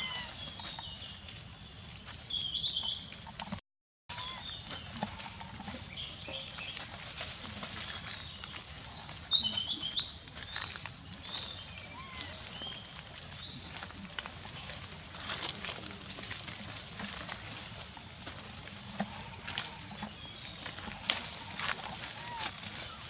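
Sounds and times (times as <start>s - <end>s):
birds chirping: 0.0s - 15.9s.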